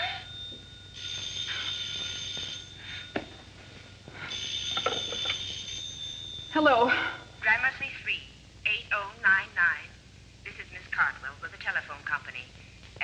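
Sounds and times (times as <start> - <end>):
telephone bell ringing: 0.0 - 7.6.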